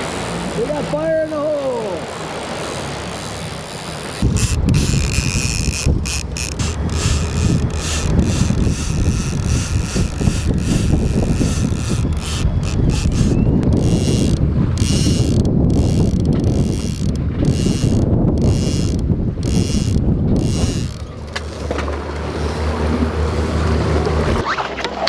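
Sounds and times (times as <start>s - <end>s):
fishing reel drag clicking: 4.2s - 24.4s
wind buffeting microphone: 4.2s - 24.4s.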